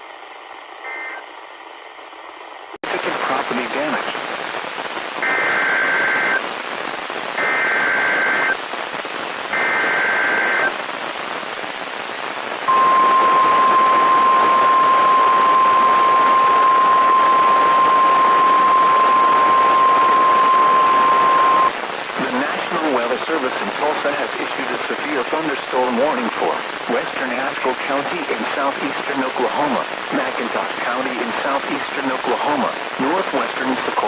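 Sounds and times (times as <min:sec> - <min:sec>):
radio static hiss: 0:00.0 - 0:34.0
steady high alarm tone: 0:12.7 - 0:21.7.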